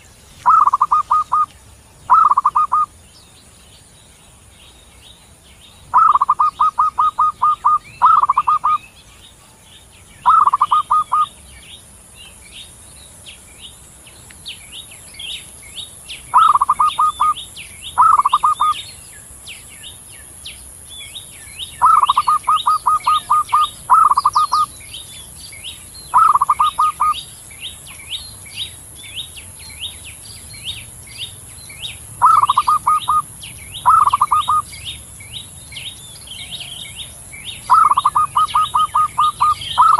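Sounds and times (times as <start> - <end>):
faint high chirping: 0.0 - 39.9
dove cooing: 0.4 - 1.5, 2.1 - 2.9, 5.9 - 8.8, 10.2 - 11.3, 16.3 - 17.4, 18.0 - 18.8, 21.8 - 24.7, 26.1 - 27.2, 32.2 - 34.7, 37.7 - 39.9.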